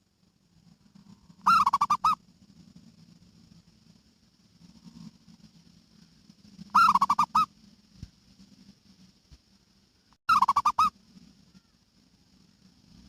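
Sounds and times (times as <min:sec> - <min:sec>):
dove cooing: 0:01.4 - 0:02.2, 0:06.7 - 0:07.5, 0:10.3 - 0:10.9.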